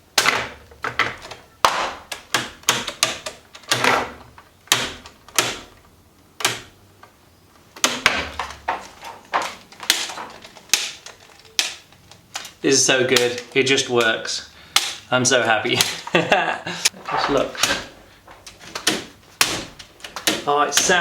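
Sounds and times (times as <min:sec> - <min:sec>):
aluminium flap clacking: 0:06.4 - 0:15.1.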